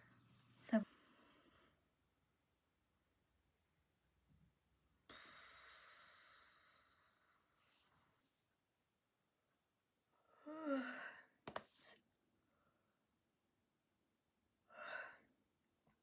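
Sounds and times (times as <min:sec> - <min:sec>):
breathy exhale: 0:05.1 - 0:07.9.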